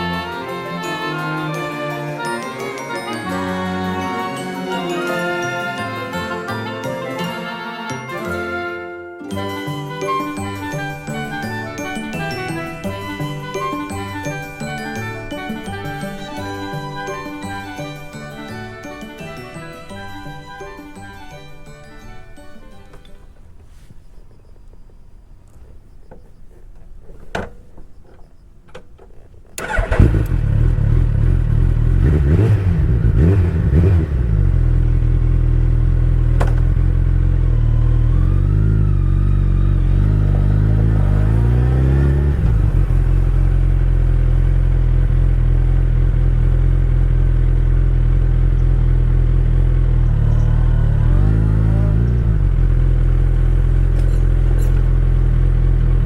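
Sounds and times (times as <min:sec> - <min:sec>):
clicks: 0:20.8 - 0:30.3
motorcycle engine revving and idling: 0:28.9 - 0:56.0.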